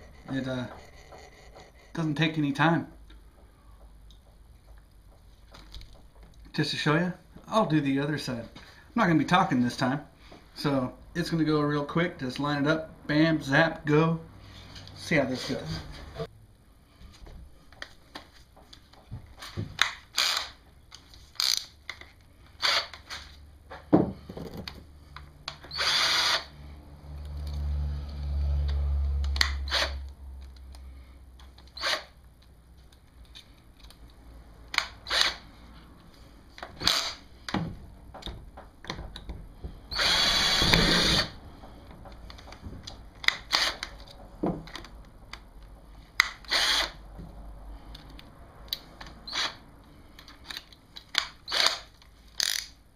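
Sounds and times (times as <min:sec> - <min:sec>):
power drill driving screws: 0:20.2 - 0:20.6, 0:22.6 - 0:23.0, 0:25.6 - 0:26.5, 0:29.4 - 0:30.0, 0:31.8 - 0:32.1, 0:34.8 - 0:35.4, 0:36.8 - 0:37.2, 0:39.9 - 0:41.4, 0:43.3 - 0:43.9, 0:46.3 - 0:47.0, 0:49.3 - 0:49.6, 0:51.5 - 0:52.6.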